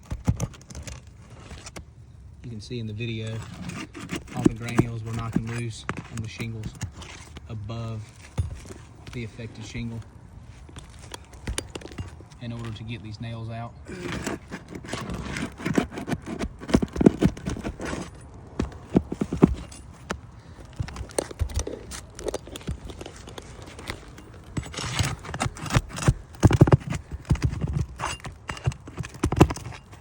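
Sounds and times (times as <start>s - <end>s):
roofing tool knocking and scraping: 0.0s - 1.9s, 3.1s - 13.1s, 13.8s - 30.0s.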